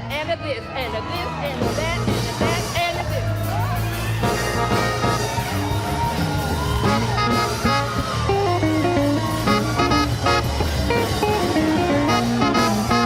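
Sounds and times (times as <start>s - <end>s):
bass guitar: 0.0s - 13.0s
drums: 0.0s - 13.0s
electric guitar: 3.5s - 13.0s.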